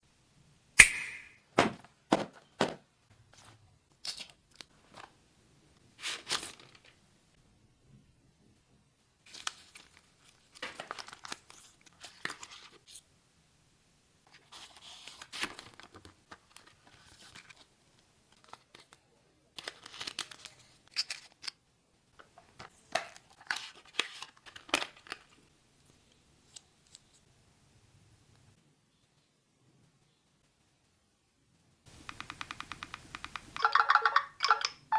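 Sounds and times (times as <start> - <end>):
sharp clicks: 0.8 - 1.4, 31.9 - 34.8.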